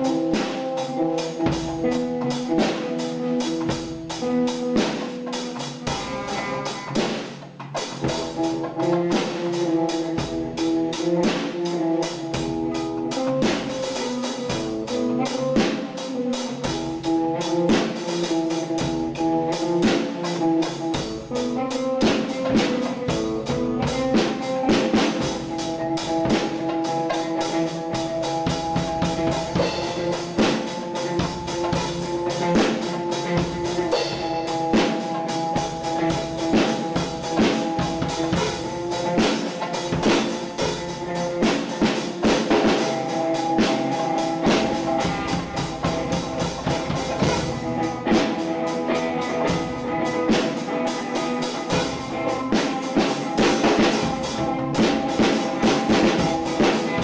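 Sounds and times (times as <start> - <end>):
band music: 0.0 - 57.0
busy drum kit: 0.0 - 57.0
held pitched notes: 0.0 - 57.0.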